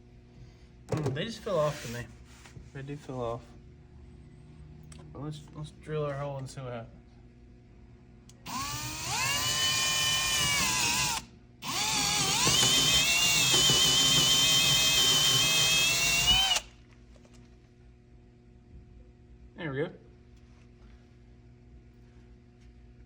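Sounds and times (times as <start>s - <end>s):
power drill boring into wood: 8.5s - 16.7s.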